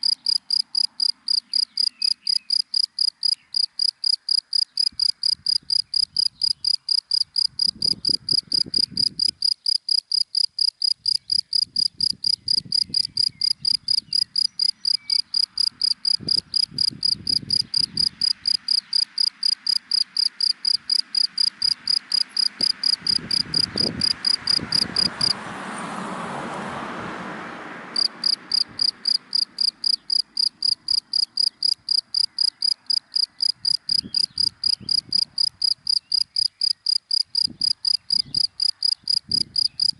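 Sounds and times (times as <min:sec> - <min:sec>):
cricket chirping: 0:00.0 - 0:25.4, 0:28.0 - 0:39.9
car passing: 0:13.4 - 0:35.6.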